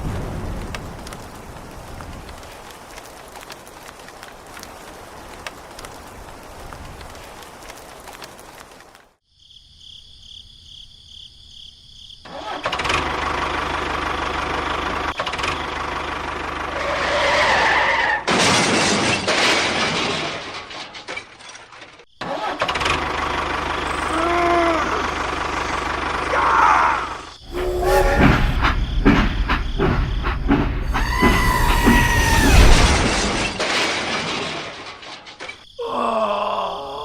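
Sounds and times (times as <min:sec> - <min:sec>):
engine running: 0:13.0 - 0:17.2, 0:22.8 - 0:24.1.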